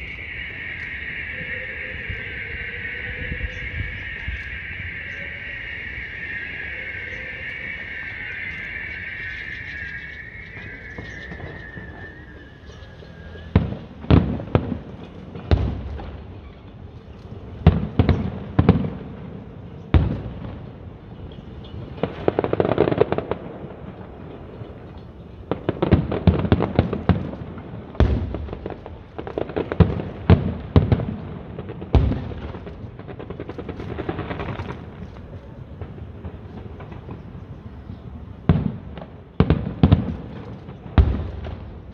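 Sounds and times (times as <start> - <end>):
fireworks crackling: 0.0 - 41.9
firework shells booming: 13.4 - 16.4, 21.9 - 37.5, 38.2 - 41.9.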